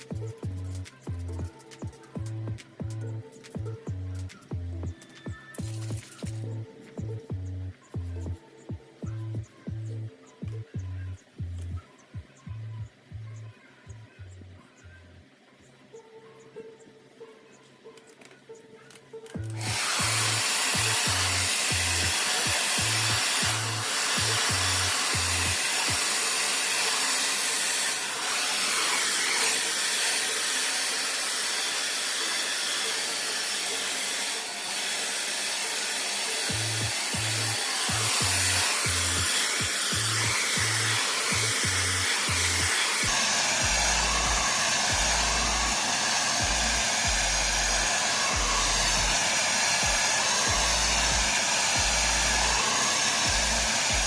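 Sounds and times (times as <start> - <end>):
background music with beat: 0.0 - 54.0
hair dryer blowing: 19.4 - 54.0.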